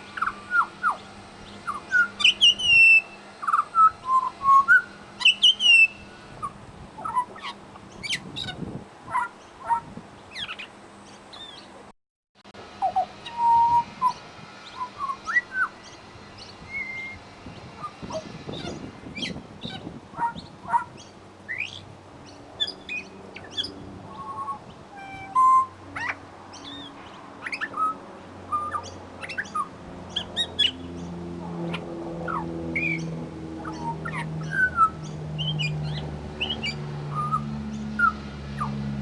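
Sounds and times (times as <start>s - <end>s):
bird singing whistled notes: 0.1s - 10.7s, 12.8s - 31.0s, 32.8s - 38.8s
low hum: 12.6s - 39.0s.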